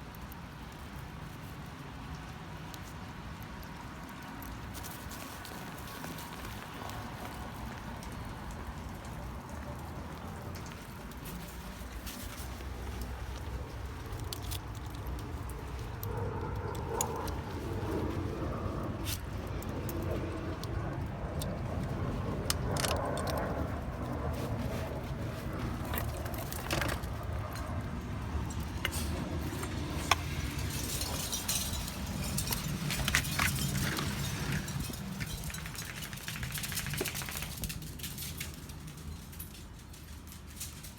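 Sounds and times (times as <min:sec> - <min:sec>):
steady low rumble: 0:08.2 - 0:36.7
small metal pieces jingling: 0:30.4 - 0:40.9.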